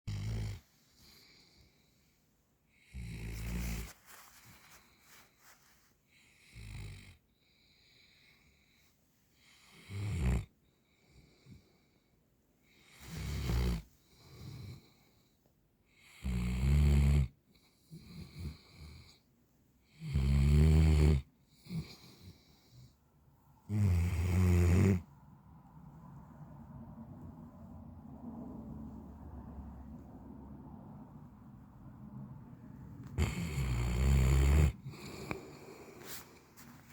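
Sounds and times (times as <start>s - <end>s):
dog snoring: 0.1s - 1.4s, 2.8s - 4.0s, 6.2s - 7.2s, 9.4s - 10.5s, 12.8s - 15.0s, 16.0s - 19.2s, 19.9s - 22.9s, 23.7s - 25.1s, 33.0s - 36.2s.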